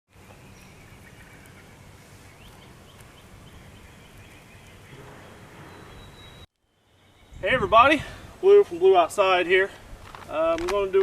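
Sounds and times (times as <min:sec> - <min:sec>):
steady outdoor hiss: 0:00.1 - 0:11.0
bird chirping: 0:00.2 - 0:07.7.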